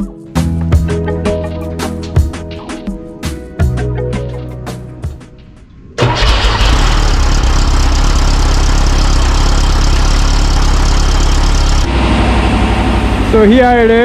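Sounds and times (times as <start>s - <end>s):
car engine fast idle: 6.0s - 13.3s.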